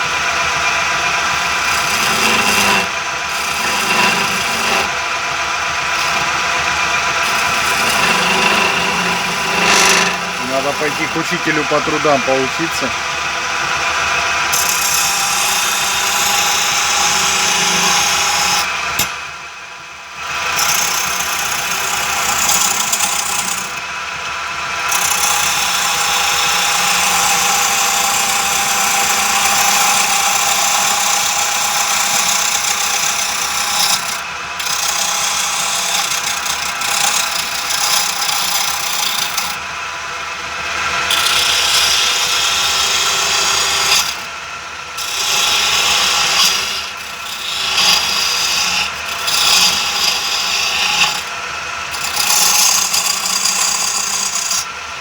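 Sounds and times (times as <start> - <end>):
lathe motor humming: 0.0 - 19.1, 40.7 - 44.3, 45.0 - 54.6
chisel scraping spinning wood: 0.0 - 19.2, 20.3 - 23.8, 24.9 - 39.6, 40.9 - 44.3, 45.0 - 54.6.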